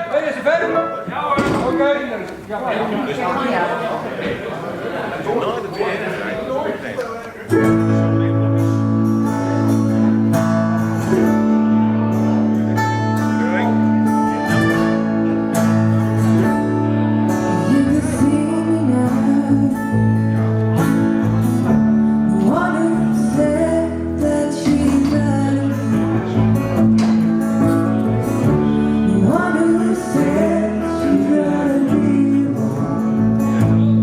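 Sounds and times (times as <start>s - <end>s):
guitar accompaniment: 7.0s - 34.0s
woman singing: 17.4s - 20.3s, 22.2s - 26.4s, 28.9s - 33.0s.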